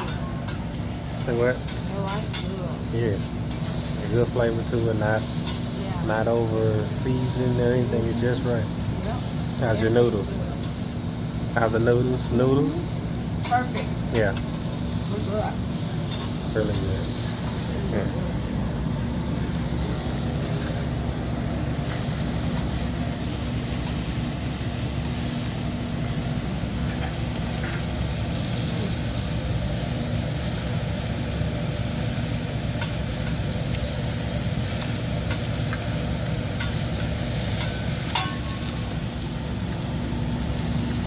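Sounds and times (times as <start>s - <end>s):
food sizzling on a griddle: 0.0s - 41.0s
metallic clink: 36.6s - 38.8s.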